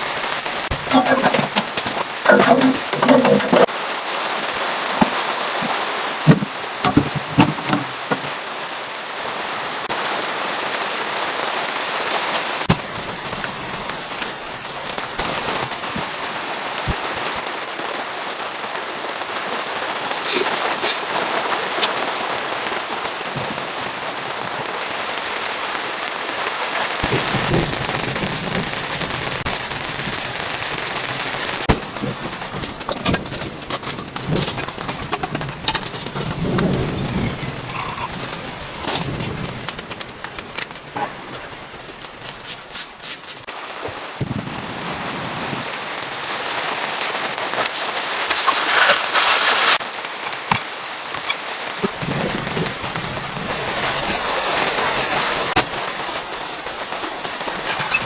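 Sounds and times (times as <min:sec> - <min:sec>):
raindrops tapping a surface: 0:00.0 - 0:44.4, 0:45.1 - 0:58.0
steady rain falling: 0:00.0 - 0:58.0.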